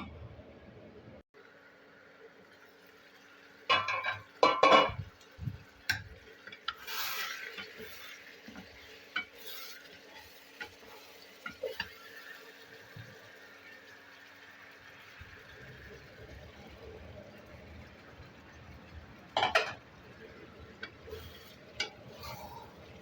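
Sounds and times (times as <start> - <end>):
spoon scraping a pot: 21.1 - 22.8.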